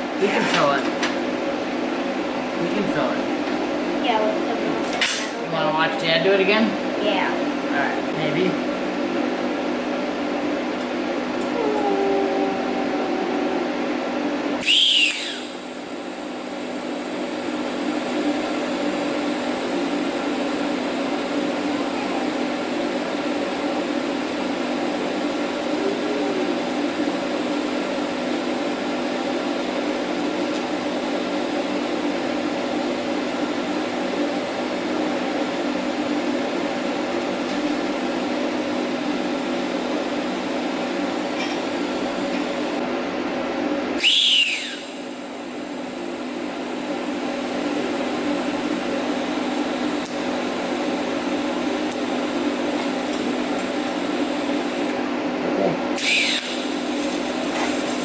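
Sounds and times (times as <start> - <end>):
machine hum with hiss: 0.0 - 58.0
sharp noise with falling whine: 11.4 - 30.0, 43.9 - 54.9, 56.0 - 58.0.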